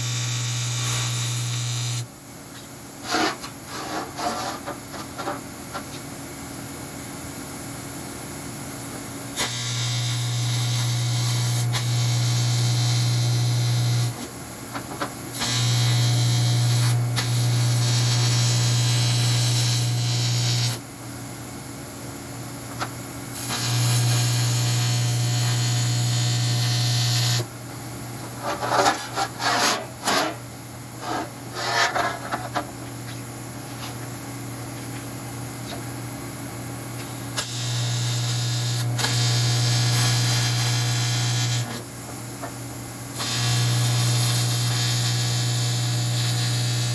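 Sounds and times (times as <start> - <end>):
electric welding arc buzzing: 0.0 - 2.1, 9.4 - 14.3, 15.3 - 20.8, 23.3 - 27.5, 37.3 - 41.8, 43.2 - 46.9.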